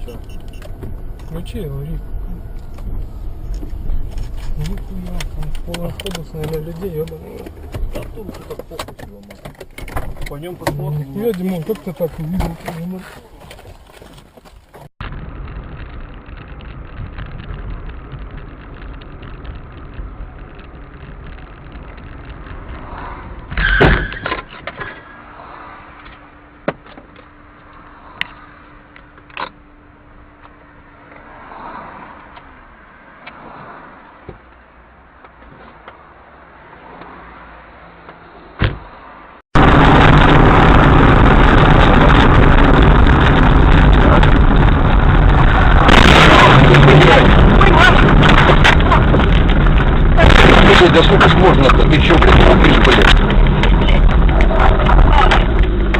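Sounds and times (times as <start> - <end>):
car interior low rumble: 0.0 - 23.6, 39.6 - 55.9
road and wind noise: 0.0 - 55.9
scattered clicks and knocks: 3.6 - 14.9, 46.0 - 55.9
loud thump: 38.6 - 38.9, 39.6 - 55.9.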